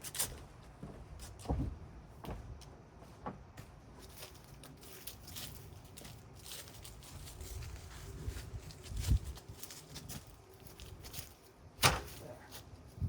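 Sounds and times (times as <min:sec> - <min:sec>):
ladder thump: 0:11.8 - 0:12.2.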